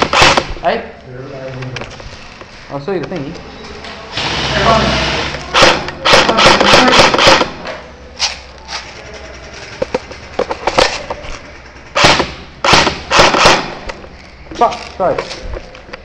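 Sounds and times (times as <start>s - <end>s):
airsoft guns firing: 0.0s - 0.6s, 4.8s - 7.7s, 11.9s - 14.0s.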